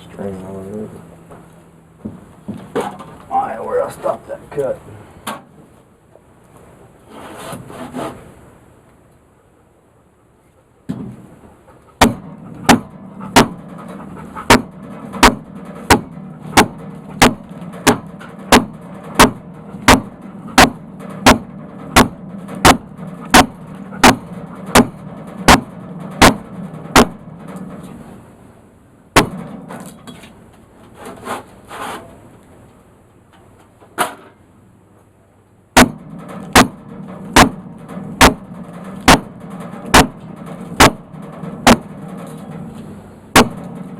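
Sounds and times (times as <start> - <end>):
scraping noises: 7.0 - 8.4, 11.6 - 28.3, 29.4 - 32.3
sharp repeating clicks: 14.5 - 27.2, 35.8 - 36.8, 37.4 - 37.6, 38.2 - 40.2, 40.8 - 41.1.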